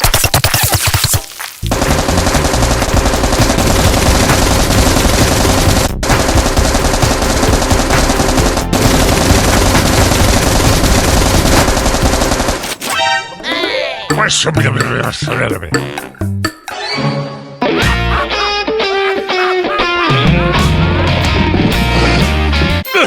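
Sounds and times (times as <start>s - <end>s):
rapid automatic gunfire: 1.7s - 12.8s.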